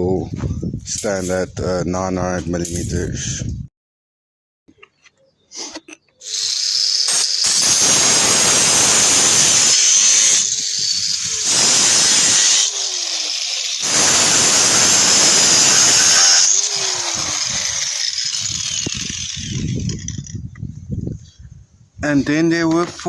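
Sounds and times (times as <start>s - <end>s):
power tool cutting steel: 6.2s - 20.4s.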